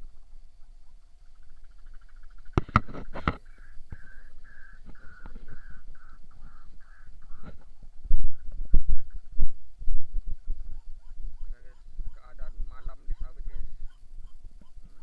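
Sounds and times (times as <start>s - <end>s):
waterhen calling harsh notes: 3.4s - 7.6s.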